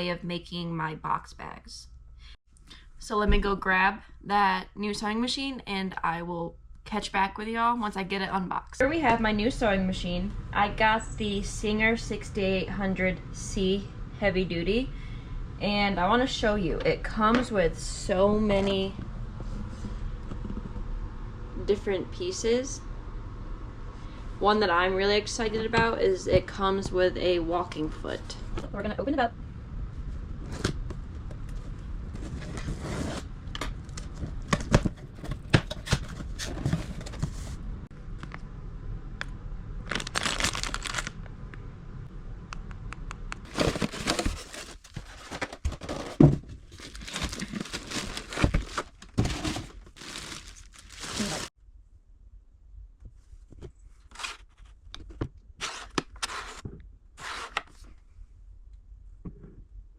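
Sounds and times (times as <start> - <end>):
knocks and scrapes: 30.3 - 37.6
packing material tearing and rustling: 39.8 - 41.2, 43.4 - 51.5.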